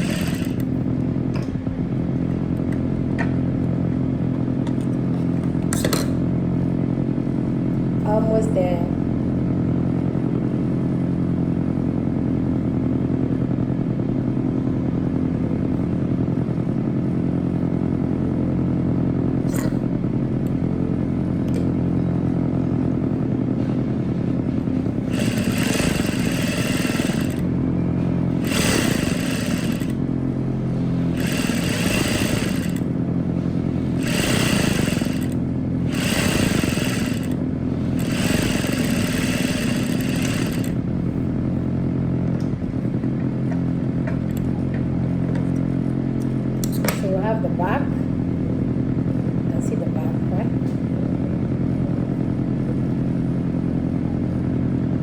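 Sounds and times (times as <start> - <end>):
sewing machine motor humming: 0.0 - 1.3, 24.5 - 41.1.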